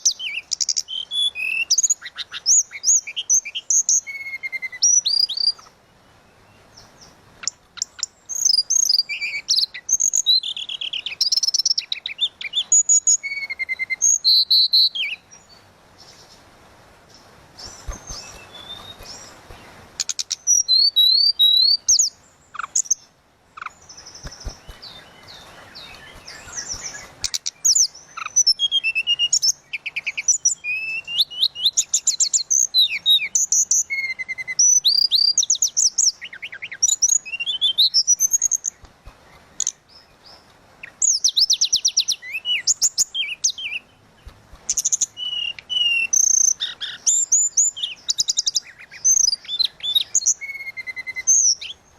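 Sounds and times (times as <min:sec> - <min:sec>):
bird singing whistled phrases: 0:00.0 - 0:05.6, 0:07.8 - 0:15.3, 0:20.1 - 0:23.0, 0:23.6 - 0:38.8, 0:40.9 - 0:43.9, 0:44.7 - 0:51.8
bird chattering trills: 0:17.6 - 0:23.0, 0:23.6 - 0:35.3.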